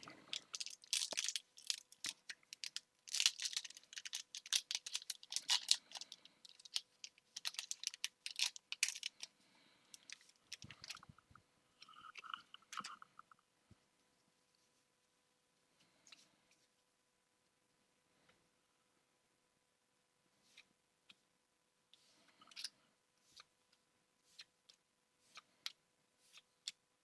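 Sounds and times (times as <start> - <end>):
foil pack tearing and crinkling: 2.6 - 6.8.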